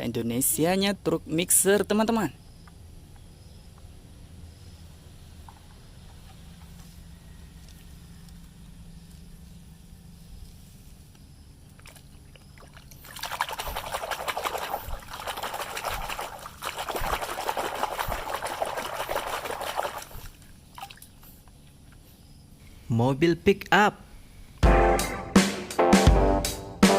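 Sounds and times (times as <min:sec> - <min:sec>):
running water splashing on toy: 0:12.5 - 0:21.0.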